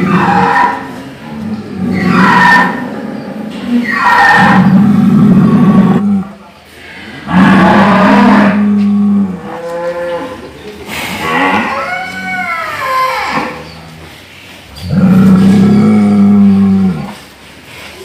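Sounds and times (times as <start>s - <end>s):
cow mooing: 3.8s - 6.4s, 7.2s - 10.5s, 14.9s - 17.2s.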